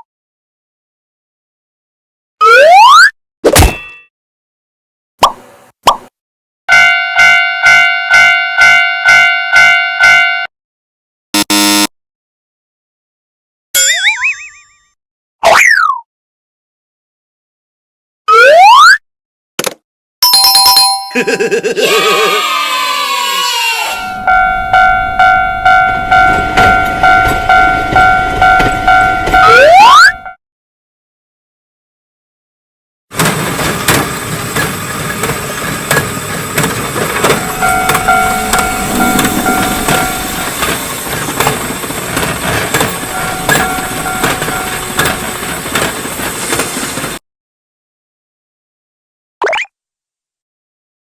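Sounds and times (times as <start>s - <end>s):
railroad crossing bell ringing: 6.7s - 10.5s, 20.2s - 21.7s, 23.9s - 30.4s, 36.4s - 45.8s
train wheels clicking over rails: 33.2s - 47.2s
low rumble: 36.8s - 44.6s
rising whistle-like glide: 37.2s - 41.0s.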